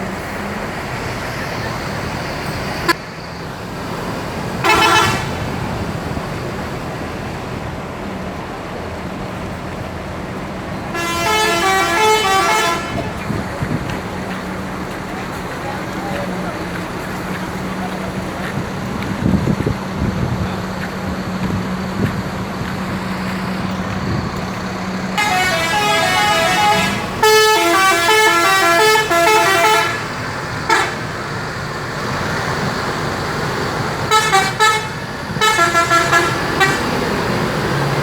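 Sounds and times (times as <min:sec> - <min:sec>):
rapid horn toots: 0:04.6 - 0:05.5, 0:10.9 - 0:13.2, 0:25.2 - 0:31.1, 0:34.1 - 0:37.1
multi-tone musical bus horns: 0:04.6 - 0:05.7, 0:10.9 - 0:13.6, 0:24.8 - 0:31.4, 0:33.9 - 0:38.0.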